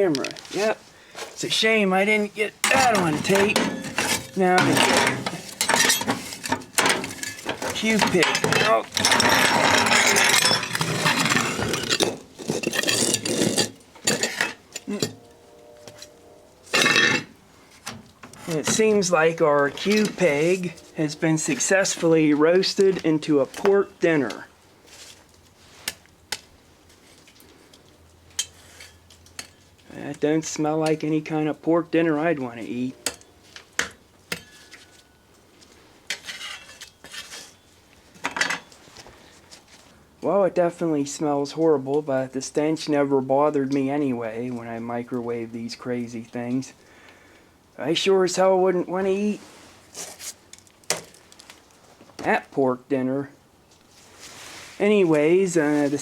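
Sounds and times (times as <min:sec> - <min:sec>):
knocks and clinks: 0:02.6 - 0:17.3
clattering and scraping in microwave: 0:02.7 - 0:14.6.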